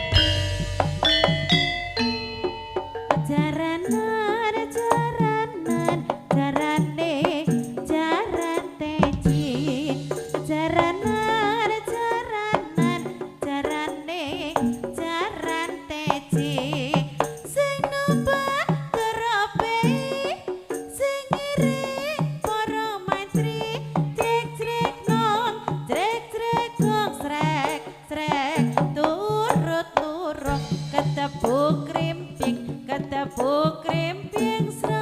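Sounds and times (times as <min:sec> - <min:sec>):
steady low tones: 0:00.0 - 0:03.9
ornamented melody line: 0:00.0 - 0:04.8
hand drums beating: 0:00.0 - 0:35.0.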